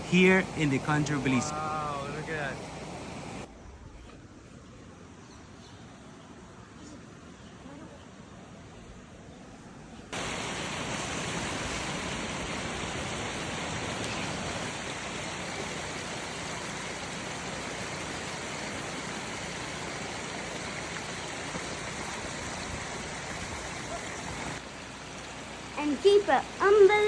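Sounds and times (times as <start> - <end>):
water rushing over waterfall: 0.0 - 3.5, 10.2 - 26.6.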